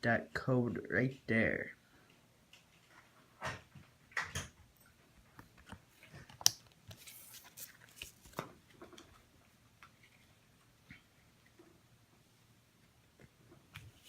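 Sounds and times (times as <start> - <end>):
cards and packaging rustling: 5.4 - 9.1
packaging crinkling: 6.2 - 8.5.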